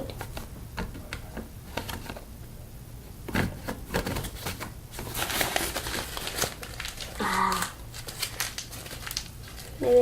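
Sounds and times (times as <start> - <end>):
crinkling and crackling: 3.3 - 10.0.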